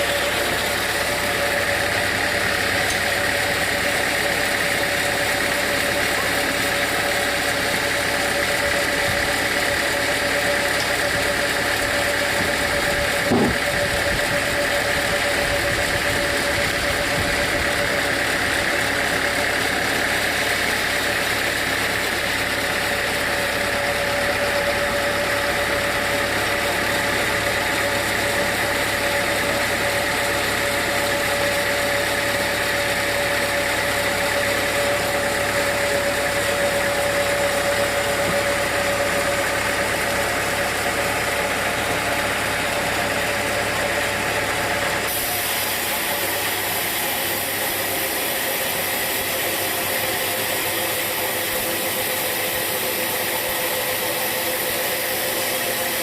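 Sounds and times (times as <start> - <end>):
sawmill machinery droning: 0.0 - 56.0.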